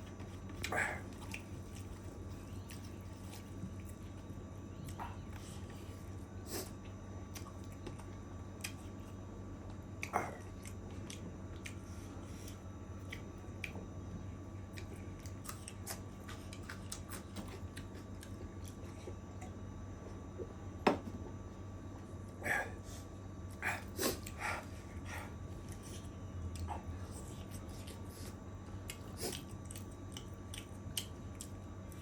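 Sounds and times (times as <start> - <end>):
chewing with wet mouth clicks: 0.4 - 5.4, 7.3 - 13.9, 14.6 - 19.6, 25.6 - 32.0.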